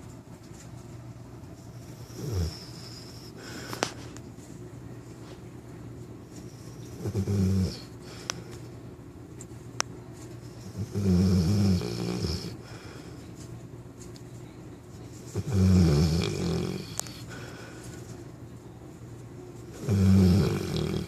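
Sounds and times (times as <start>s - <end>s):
puppy snoring: 1.8s - 3.7s, 6.5s - 8.2s, 10.6s - 12.7s, 15.3s - 17.5s, 19.7s - 21.0s
quiet breathing: 1.9s - 4.2s, 7.8s - 8.8s, 12.4s - 13.5s, 16.2s - 18.3s.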